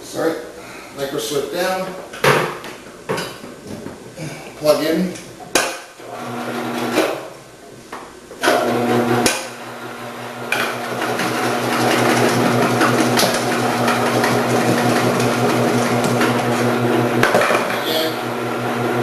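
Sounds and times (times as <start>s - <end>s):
vegetable cutter motor hum: 8.5s - 17.2s.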